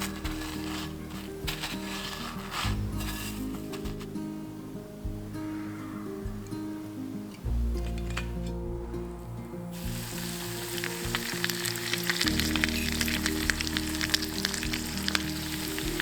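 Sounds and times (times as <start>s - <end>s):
food frying and sizzling: 0.0s - 4.1s, 9.7s - 16.0s
background music: 0.0s - 16.0s.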